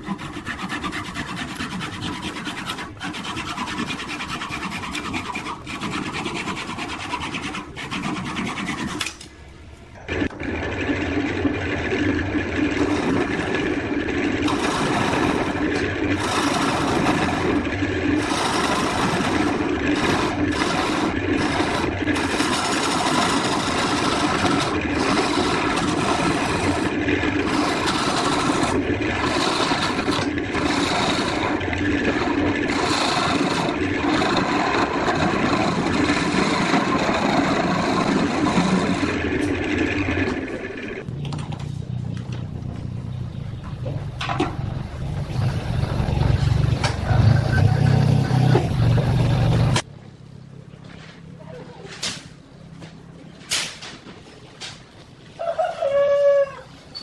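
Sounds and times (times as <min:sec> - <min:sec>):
lathe tool rasping on wood: 0:00.0 - 0:09.1, 0:11.7 - 0:41.0.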